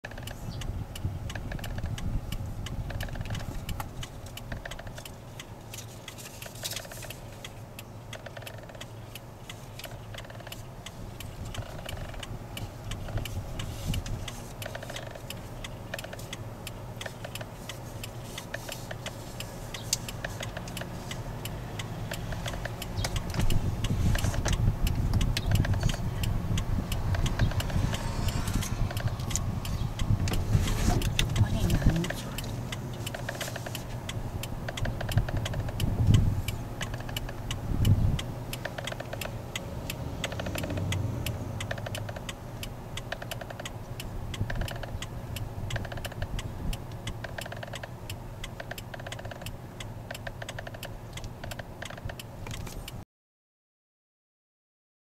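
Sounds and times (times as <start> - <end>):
turn indicator ticking: 0.0 - 53.0
low rumble: 22.5 - 33.1.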